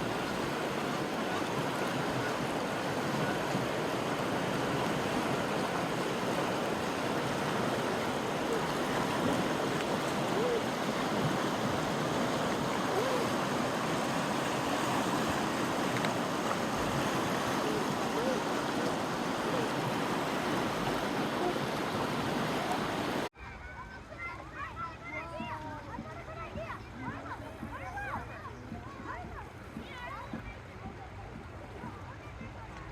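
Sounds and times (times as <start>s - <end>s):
creek water rushing: 0.0s - 23.3s.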